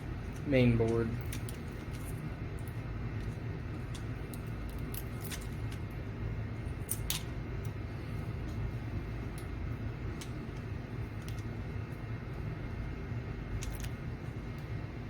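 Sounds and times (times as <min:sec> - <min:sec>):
steady low hum: 0:00.0 - 0:15.0
small clicks of parts handled: 0:11.2 - 0:11.5, 0:13.6 - 0:14.0.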